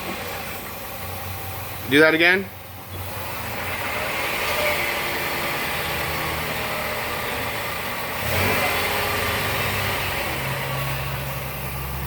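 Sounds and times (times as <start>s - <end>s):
van engine accelerating: 0.0s - 12.0s.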